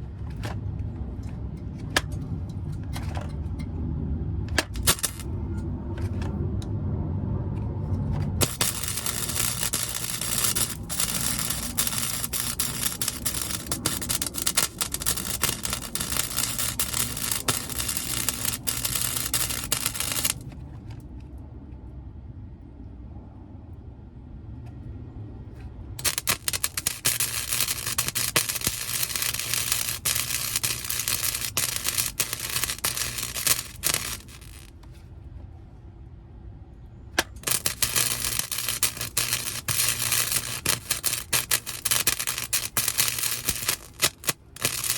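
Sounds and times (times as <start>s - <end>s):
welding arc crackling: 4.6s - 5.3s, 8.4s - 20.5s, 26.0s - 34.8s, 37.2s - 44.9s.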